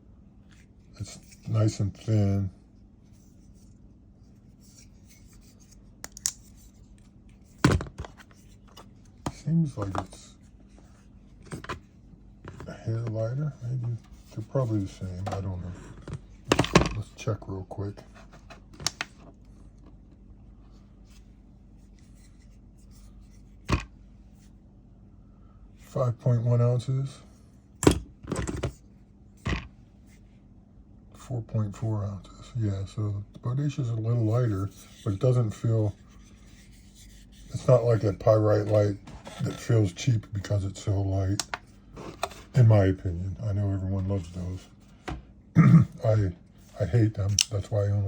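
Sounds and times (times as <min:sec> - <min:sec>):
faint rubbing and rustling: 0:00.4 - 0:19.8, 0:20.6 - 0:24.6, 0:33.7 - 0:45.1.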